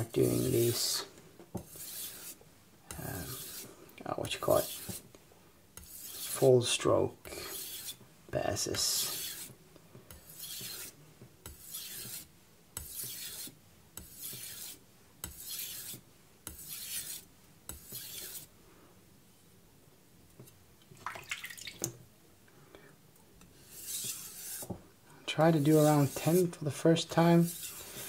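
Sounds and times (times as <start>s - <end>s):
knife scraping on whetstone: 1.6s - 3.7s, 4.3s - 5.0s, 5.8s - 6.5s, 7.4s - 8.0s, 8.8s - 9.5s, 10.1s - 18.5s, 23.5s - 24.8s, 25.5s - 28.0s.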